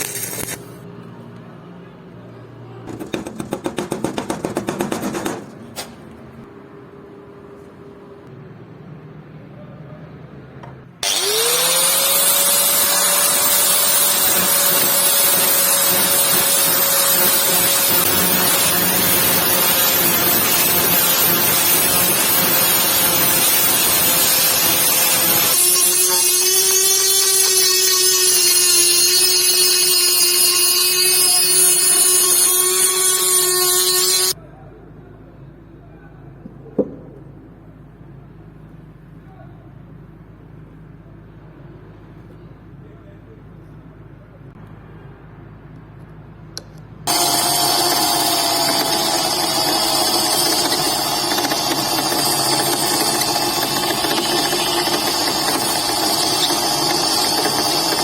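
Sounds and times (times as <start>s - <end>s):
electric power tool running: 11.0s - 34.4s, 47.1s - 58.0s.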